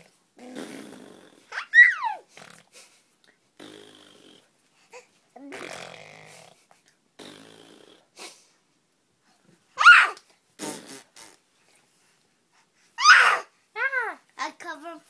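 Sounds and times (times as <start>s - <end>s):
baby squealing: 1.5s - 2.2s, 9.8s - 10.2s, 13.0s - 13.5s.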